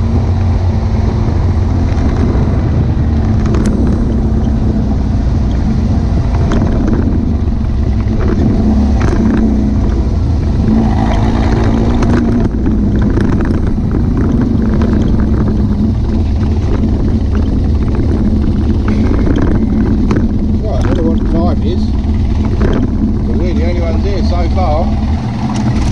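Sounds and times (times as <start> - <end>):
car engine and road noise: 0.0 - 25.9.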